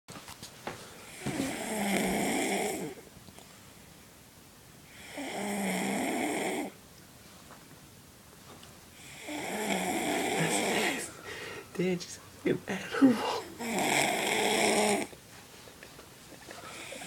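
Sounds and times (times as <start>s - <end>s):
woman snoring loudly: 1.1s - 3.0s, 4.9s - 6.8s, 9.0s - 11.1s, 13.6s - 15.1s.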